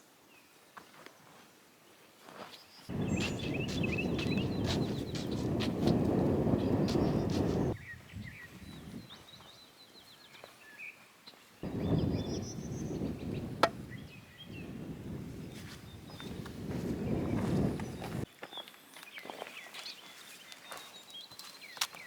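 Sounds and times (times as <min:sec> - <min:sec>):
small birds chirping: 0:02.5 - 0:22.0
low rustling noise: 0:02.9 - 0:09.5, 0:11.6 - 0:18.3.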